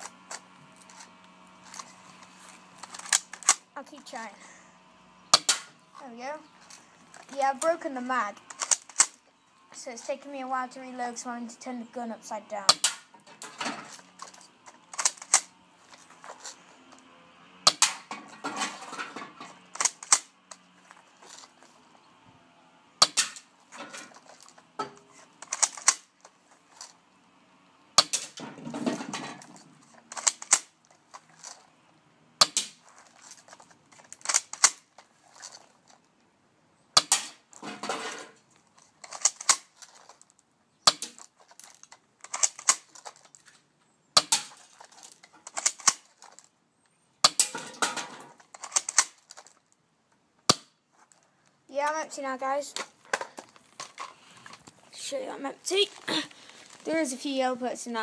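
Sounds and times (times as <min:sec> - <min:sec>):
airsoft shotgun racked and fired: 0:00.0 - 0:03.7, 0:05.3 - 0:05.8, 0:08.4 - 0:09.2, 0:12.7 - 0:16.6, 0:17.6 - 0:20.6, 0:23.0 - 0:26.1, 0:28.0 - 0:31.6, 0:32.4 - 0:35.6, 0:37.0 - 0:38.4, 0:39.0 - 0:40.1, 0:40.9 - 0:43.4, 0:44.2 - 0:46.4, 0:47.2 - 0:49.6
plastic scraping: 0:00.0 - 0:04.3, 0:13.2 - 0:17.1, 0:23.0 - 0:27.0, 0:32.6 - 0:36.1, 0:37.5 - 0:40.3, 0:41.0 - 0:43.6, 0:44.3 - 0:46.5, 0:47.5 - 0:49.7, 0:52.6 - 0:57.5.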